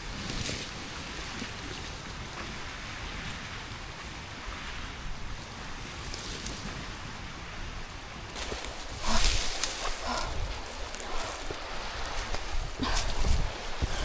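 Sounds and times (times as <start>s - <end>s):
rushing water: 1.0s - 14.0s
rain hissing: 8.4s - 14.0s.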